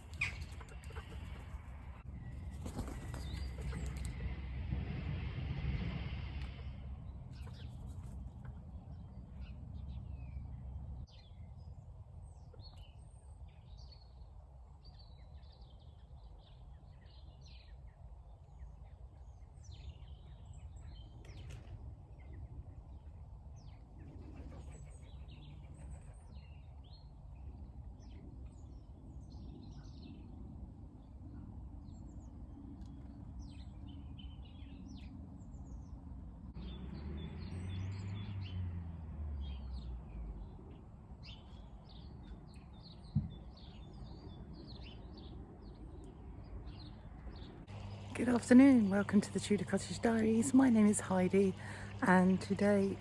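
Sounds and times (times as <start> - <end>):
small birds chirping and singing: 0.0 - 4.2, 39.4 - 53.0.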